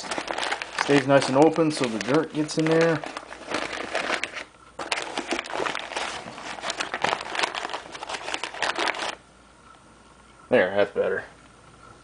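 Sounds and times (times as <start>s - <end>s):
paper bag rustling and crinkling: 0.0s - 9.2s.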